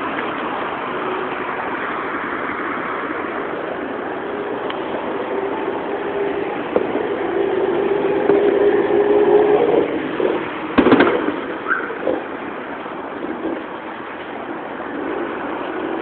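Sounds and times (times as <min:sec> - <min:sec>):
fireworks cracking: 0:10.7 - 0:12.2
fireworks popping faintly: 0:10.7 - 0:12.3.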